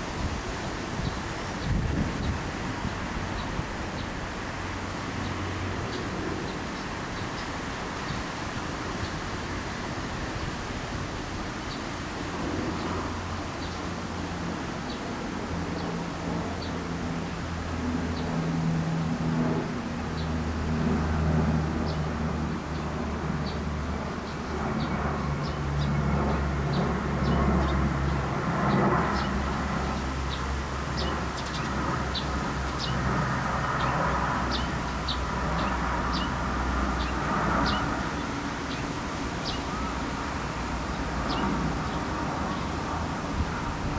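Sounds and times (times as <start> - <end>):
birds chirping: 21.8 - 43.0.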